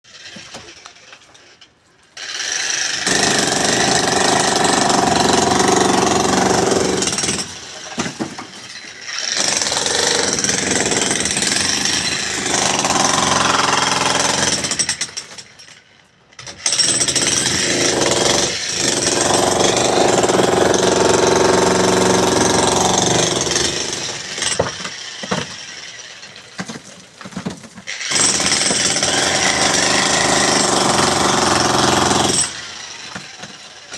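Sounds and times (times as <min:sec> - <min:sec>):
demolition breaker hammering: 0:03.0 - 0:08.7, 0:09.4 - 0:15.1, 0:16.7 - 0:25.6, 0:27.3 - 0:33.6.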